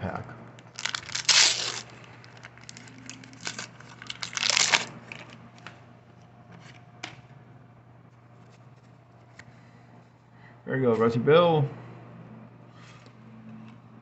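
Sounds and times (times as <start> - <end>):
wax paper wrapper crinkling and tearing: 0.7 - 5.4.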